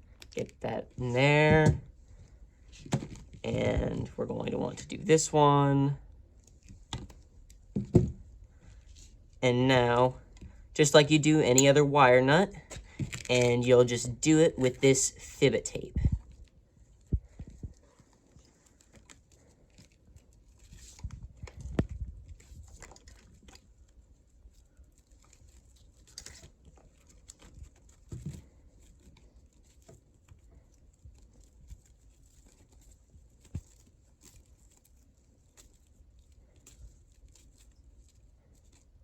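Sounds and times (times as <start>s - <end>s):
handling thumps: 6.9s - 8.3s
tape crinkling and tearing: 16.2s - 39.0s.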